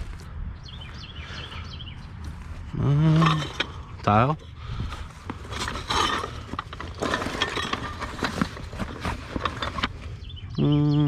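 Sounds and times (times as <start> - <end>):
items clinking and clattering: 3.2 - 10.1.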